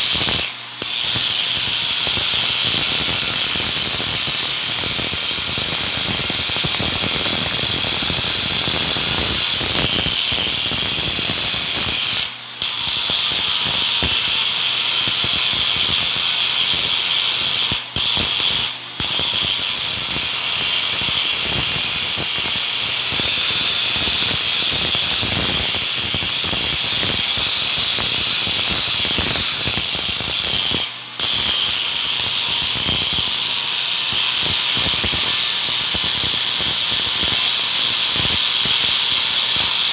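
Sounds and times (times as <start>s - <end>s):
welding arc crackling and sizzling: 0.0s - 39.9s.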